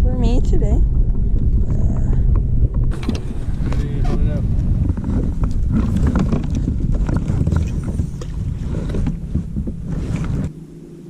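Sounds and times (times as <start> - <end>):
wind buffeting microphone: 0.0 - 11.0
handling knocks and rustles: 1.5 - 10.5.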